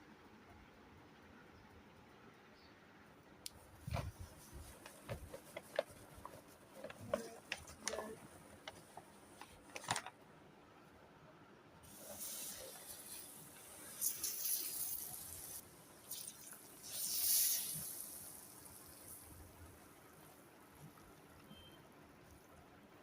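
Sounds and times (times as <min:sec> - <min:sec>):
tap water running: 0:11.9 - 0:21.0.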